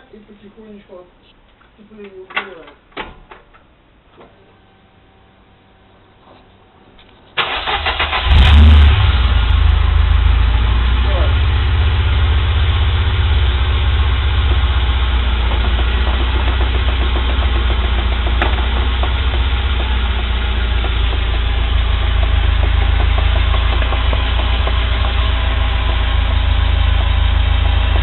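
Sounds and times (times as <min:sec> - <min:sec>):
car engine running: 0:07.5 - 0:28.0
driveshaft knocking: 0:14.5 - 0:27.2.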